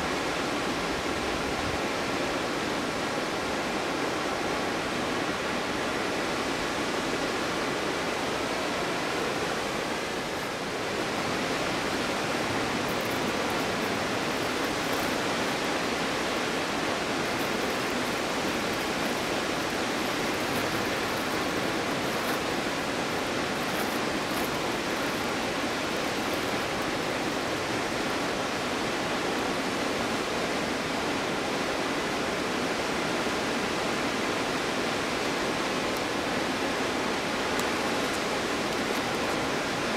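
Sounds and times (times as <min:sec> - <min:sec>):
waterfall rushing: 0:00.1 - 0:39.9.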